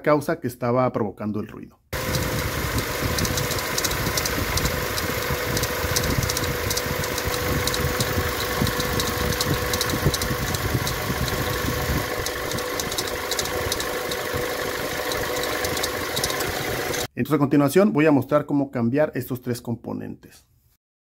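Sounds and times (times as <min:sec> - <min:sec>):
engine idling: 0:02.0 - 0:17.1
light metallic ticking: 0:02.1 - 0:14.3.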